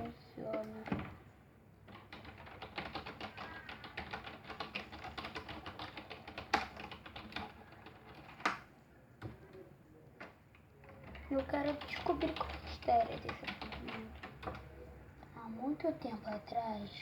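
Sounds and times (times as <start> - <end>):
rapid typing on keyboard: 1.9 - 9.4, 10.2 - 14.8.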